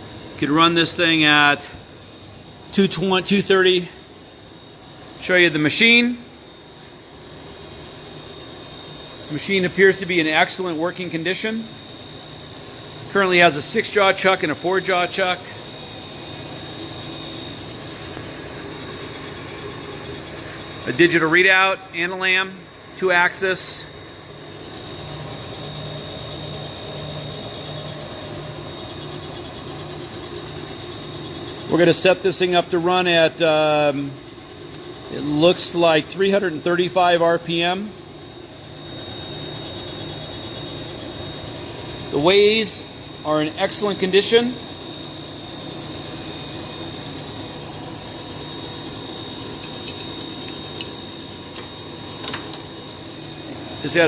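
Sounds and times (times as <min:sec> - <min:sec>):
machinery hum with throb: 0:00.0 - 0:54.0.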